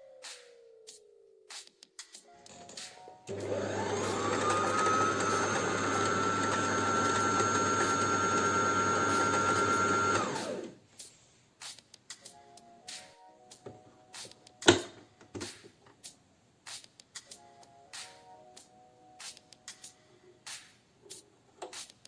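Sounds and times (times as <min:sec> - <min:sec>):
sewing machine motor whining: 0:03.3 - 0:10.8.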